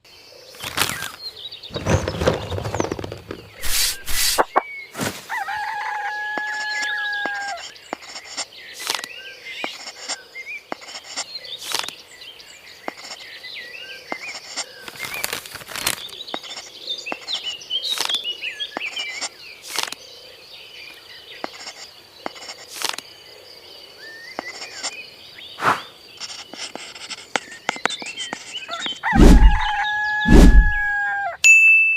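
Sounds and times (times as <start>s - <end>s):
birds chirping: 0.0s - 5.7s, 6.3s - 31.4s
rooster crowing: 5.3s - 7.6s, 29.0s - 31.4s.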